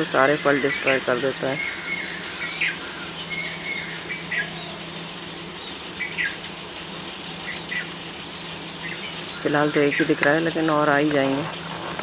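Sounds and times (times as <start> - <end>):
insects droning: 0.0 - 12.0.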